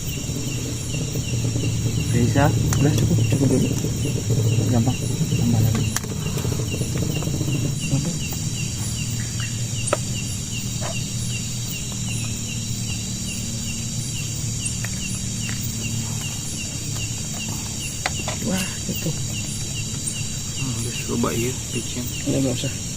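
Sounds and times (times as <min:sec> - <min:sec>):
insects chirping: 0:00.0 - 0:22.9
steady low hum: 0:00.0 - 0:22.9
scattered clicks: 0:11.7 - 0:22.6.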